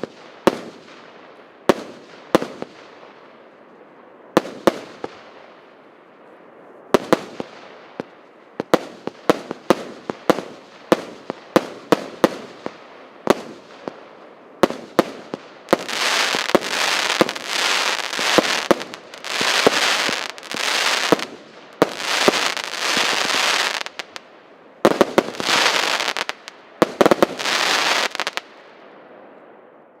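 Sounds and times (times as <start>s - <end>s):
noisy firework bursts: 7.0s - 24.2s, 24.8s - 28.4s
firework bangs: 14.6s - 24.2s, 24.8s - 28.4s.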